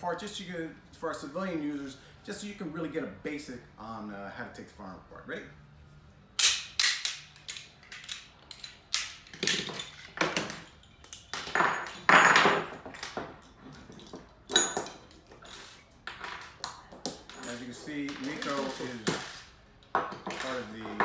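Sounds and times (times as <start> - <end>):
metal gun parts clicking: 6.4 - 11.5
metal parts scraping: 6.8 - 12.3, 17.2 - 19.6.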